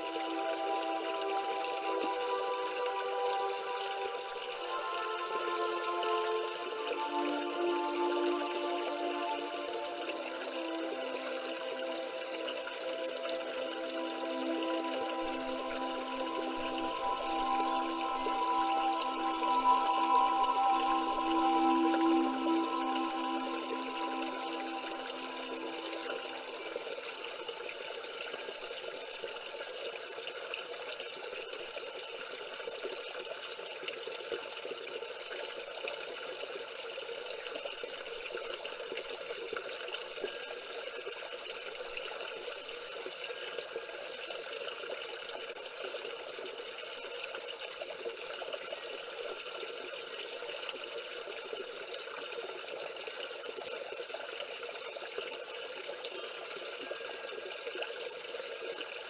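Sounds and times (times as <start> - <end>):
waterfall splashing over stones: 0.0 - 37.3.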